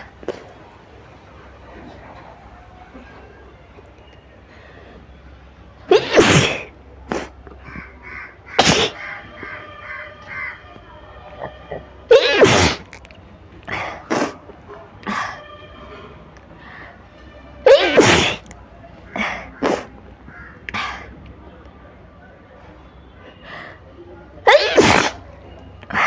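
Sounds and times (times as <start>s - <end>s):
woman sneezing: 17.7s - 18.4s, 24.5s - 25.2s.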